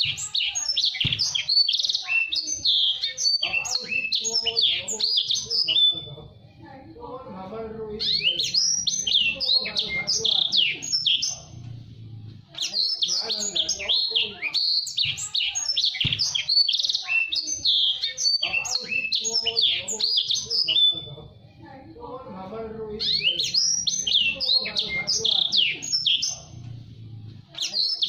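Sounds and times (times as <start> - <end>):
bird singing fast chirps: 0.0 - 6.1, 8.0 - 11.6, 12.6 - 21.1, 23.0 - 26.6, 27.6 - 28.0.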